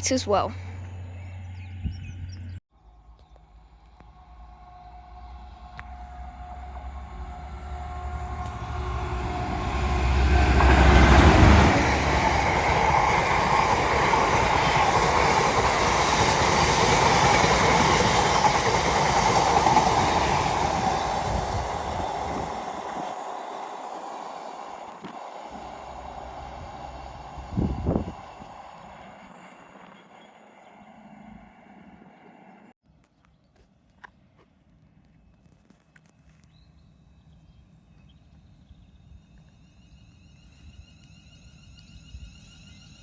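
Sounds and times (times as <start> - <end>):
train passing: 0.0 - 32.8
wheels rushing on rails: 0.0 - 32.8.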